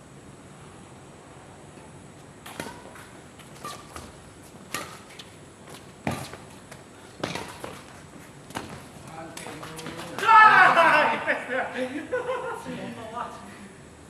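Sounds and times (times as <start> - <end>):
racket hitting shuttlecock: 2.4 - 6.5, 7.2 - 10.7.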